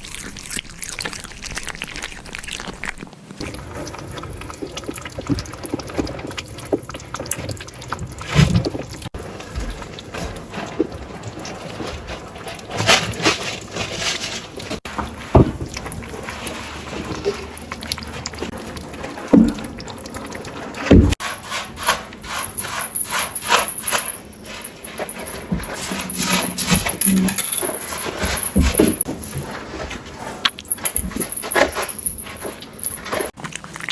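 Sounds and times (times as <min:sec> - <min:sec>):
kittens chewing wetly: 0:00.0 - 0:08.8, 0:15.8 - 0:20.9, 0:33.4 - 0:33.9.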